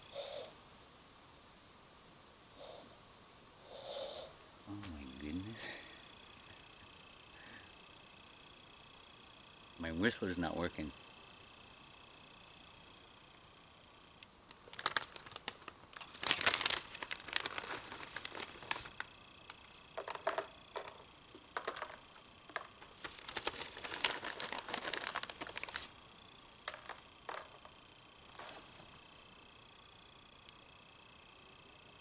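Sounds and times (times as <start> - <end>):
crinkling handling noise: 14.5 - 29.4.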